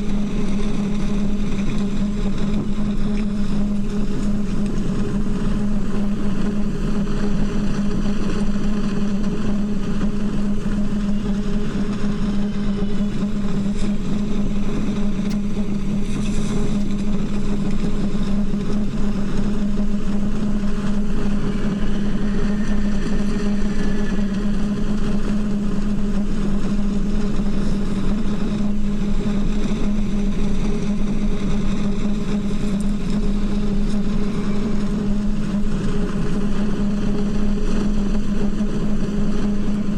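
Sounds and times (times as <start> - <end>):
low drone of wind in pipes: 0.0 - 39.9
faint high gliding tone: 19.8 - 26.3.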